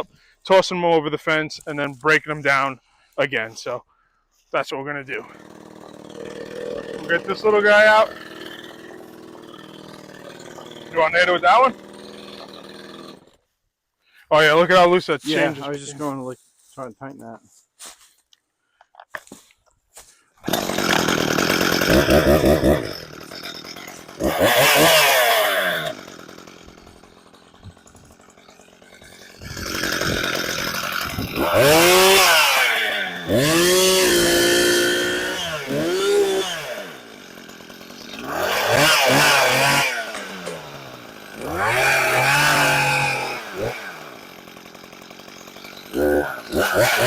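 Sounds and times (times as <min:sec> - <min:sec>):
chainsaw revving: 0:05.0 - 0:13.4, 0:15.3 - 0:15.8, 0:20.4 - 0:47.0.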